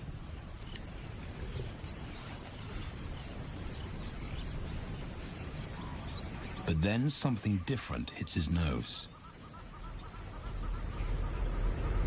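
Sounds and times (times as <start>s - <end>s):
faint bird chirps: 0.0s - 12.0s
faint insect whine: 0.0s - 12.0s
low rumble: 10.3s - 12.0s.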